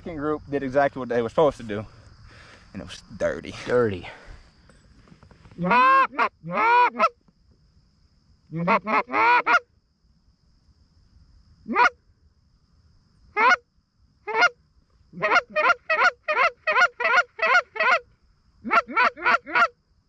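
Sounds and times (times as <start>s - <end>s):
goose honking: 5.6s - 7.1s, 8.6s - 9.6s, 15.2s - 18.0s, 18.6s - 19.7s.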